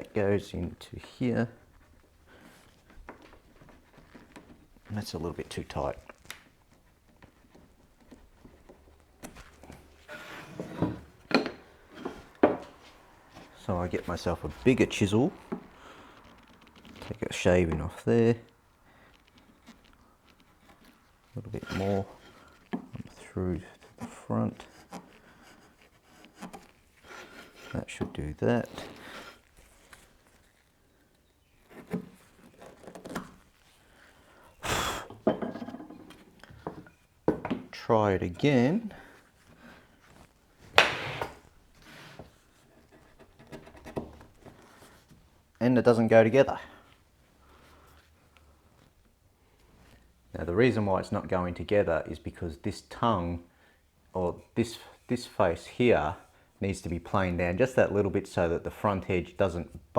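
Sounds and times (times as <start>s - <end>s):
wooden joint scraping: 0.0s - 45.3s
wood knocking on workbench: 10.6s - 12.8s, 40.8s - 41.4s.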